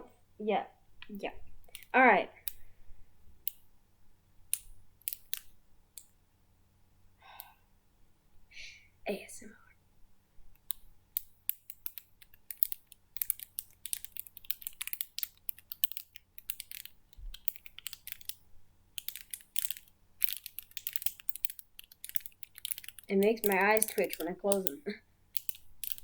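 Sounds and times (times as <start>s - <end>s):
plastic fidget toy clicking: 1.0s - 2.7s, 3.4s - 3.7s, 4.5s - 6.1s, 10.6s - 26.0s.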